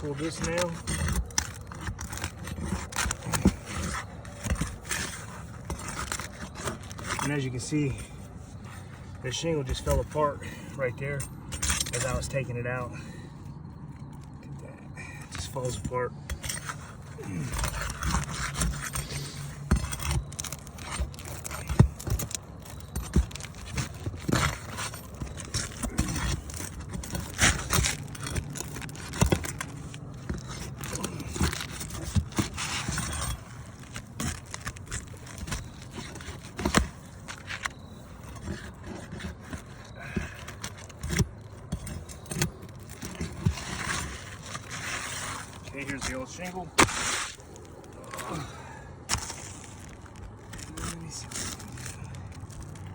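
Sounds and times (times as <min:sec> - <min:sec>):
shingles scraping and crackling: 0:00.0 - 0:52.9
metal clinks: 0:05.7 - 0:12.8, 0:13.6 - 0:44.8.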